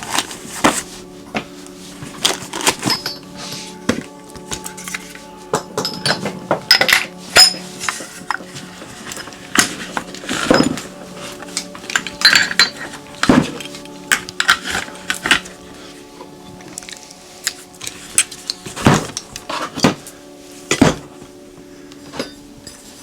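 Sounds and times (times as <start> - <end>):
metal hand tools clattering: 2.2 - 20.1.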